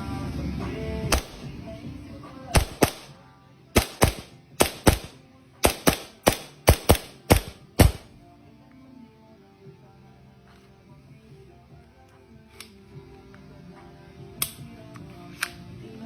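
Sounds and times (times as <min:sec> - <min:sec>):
pistol slide snapping: 0:01.1 - 0:01.5, 0:02.6 - 0:03.1, 0:03.8 - 0:08.1, 0:14.4 - 0:15.7
airsoft pistol shots: 0:01.1 - 0:01.6, 0:02.6 - 0:03.2, 0:03.8 - 0:08.1.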